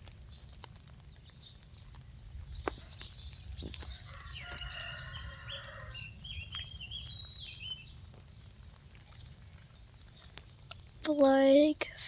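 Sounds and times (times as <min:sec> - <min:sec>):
wind rumble on microphone: 0:00.0 - 0:11.1
bird chirping: 0:02.2 - 0:08.0.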